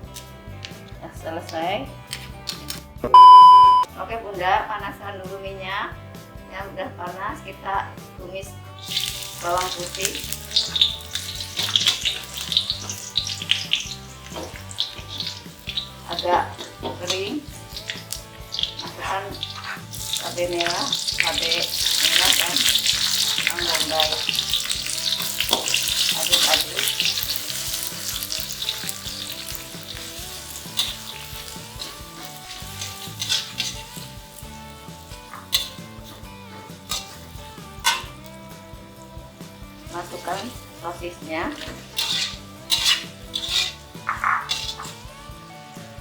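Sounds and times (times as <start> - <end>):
garlic sizzling in oil: 8.6 - 46.0
utensil scraping a pan: 8.7 - 38.4, 40.0 - 45.8.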